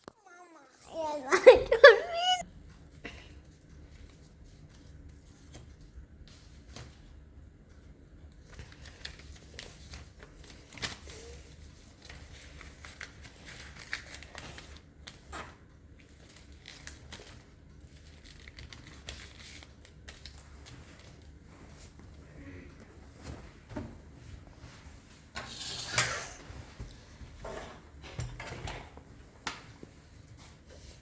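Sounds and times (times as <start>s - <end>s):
paper rustling and crinkling: 8.4s - 22.0s.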